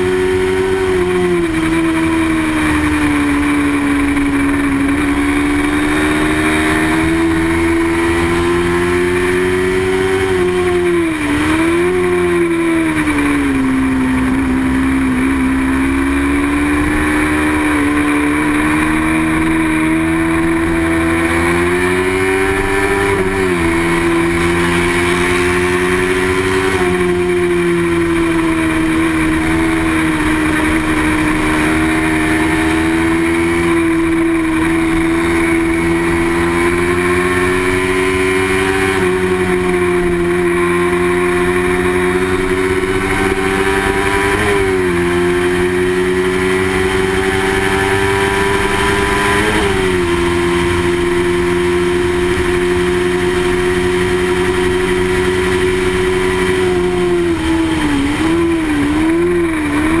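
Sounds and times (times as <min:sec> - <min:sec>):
racing motorcycle engine revving: 0:00.0 - 1:00.0.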